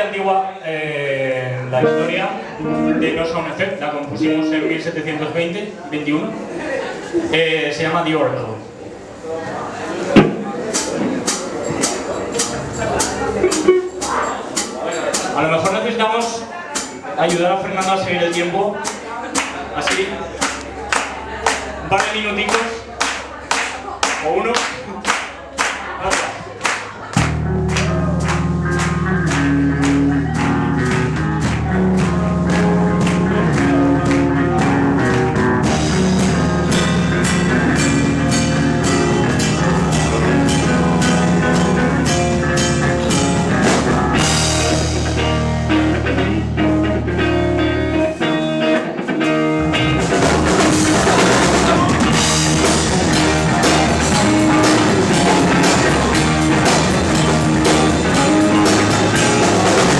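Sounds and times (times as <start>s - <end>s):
electric guitar: 1.7s - 4.6s, 26.1s - 59.9s
long held bass notes: 1.8s - 3.6s, 26.1s - 48.7s, 49.3s - 59.9s
steady drumbeat: 10.7s - 47.1s, 49.8s - 59.9s.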